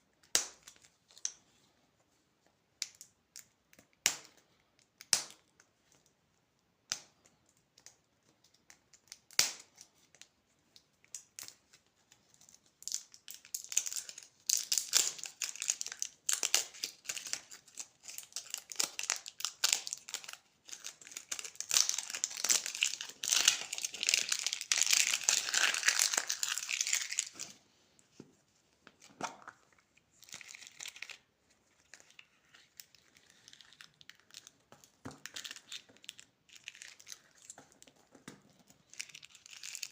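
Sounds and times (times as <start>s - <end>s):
plastic wrappers crinkling and tearing: 11.1s - 27.6s, 28.9s - 39.9s.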